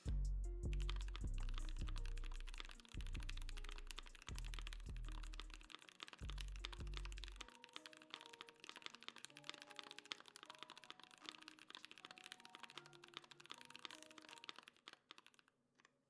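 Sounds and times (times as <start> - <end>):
music with deep bass: 0.0 - 7.4
mechanical keyboard typing: 0.6 - 15.9.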